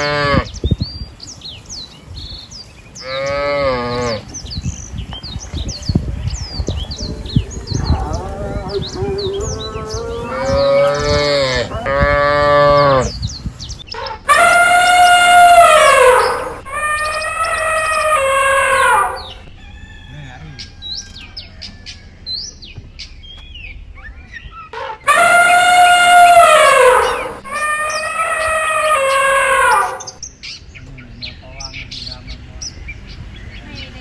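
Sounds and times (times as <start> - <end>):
cattle mooing: 0.0 - 0.5, 3.0 - 4.3, 7.6 - 13.2, 14.3 - 19.4, 25.1 - 30.2
small birds chirping: 0.0 - 34.0.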